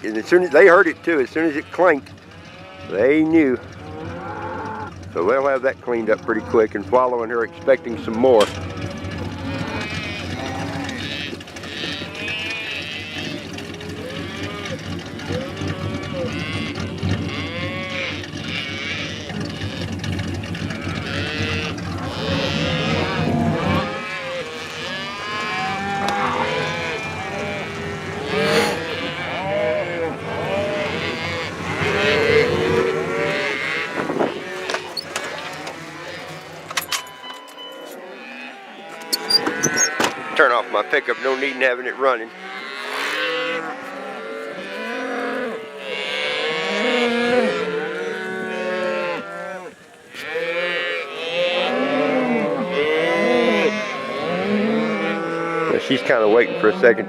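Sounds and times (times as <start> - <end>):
cattle mooing: 0.0 - 36.8, 37.8 - 57.0
pickup engine idling: 0.6 - 23.8, 24.5 - 36.8.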